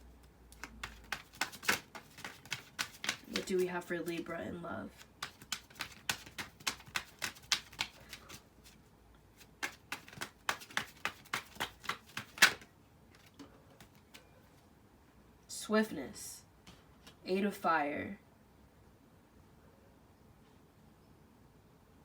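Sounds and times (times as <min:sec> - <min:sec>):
cards shuffling: 0:00.5 - 0:04.3, 0:05.0 - 0:08.8, 0:09.4 - 0:14.2
card snap: 0:09.6 - 0:12.6.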